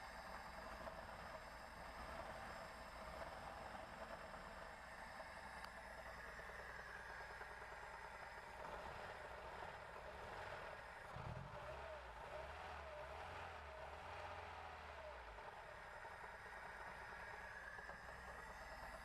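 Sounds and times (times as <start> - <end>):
car engine running: 0.1 - 19.0.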